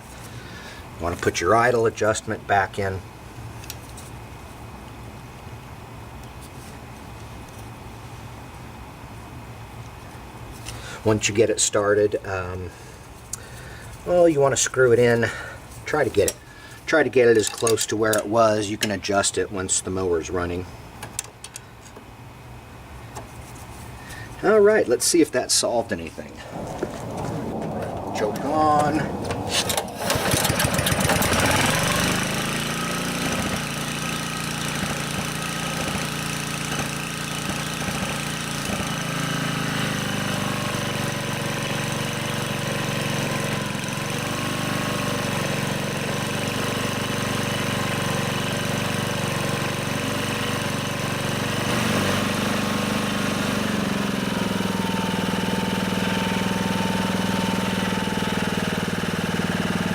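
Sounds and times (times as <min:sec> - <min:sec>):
lawn mower engine idling: 0:12.7 - 0:16.8, 0:28.2 - 0:59.9.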